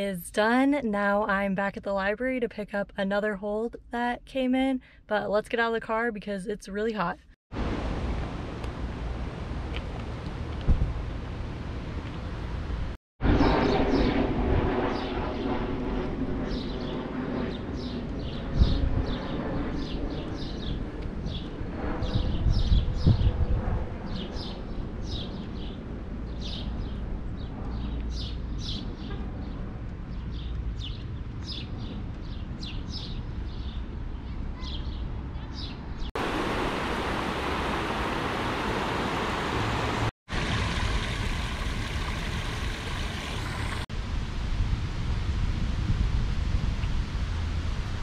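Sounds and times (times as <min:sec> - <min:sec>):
low outdoor rumble: 0:07.2 - 0:19.6
wind on microphone: 0:12.7 - 0:30.2, 0:34.4 - 0:48.0
small birds chirping: 0:30.1 - 0:36.1.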